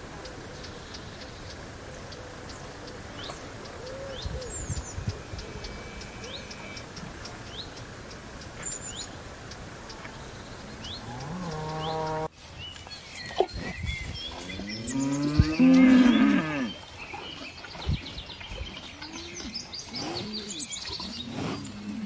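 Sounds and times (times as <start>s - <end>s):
steady outdoor hiss: 0.0s - 22.0s
small birds chirping: 4.1s - 22.0s
cow mooing: 4.2s - 12.3s, 14.4s - 16.8s.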